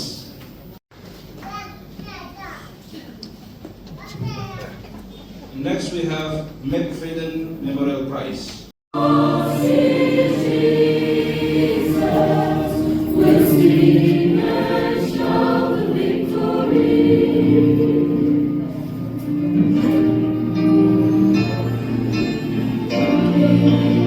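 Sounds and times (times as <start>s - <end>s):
choir singing a hymn: 9.0s - 24.0s.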